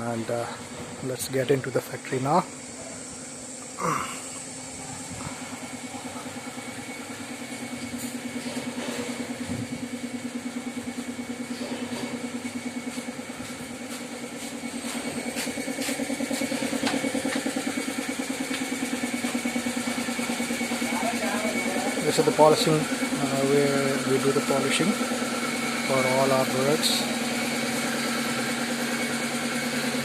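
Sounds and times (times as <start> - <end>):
factory machinery droning: 0.0 - 30.0.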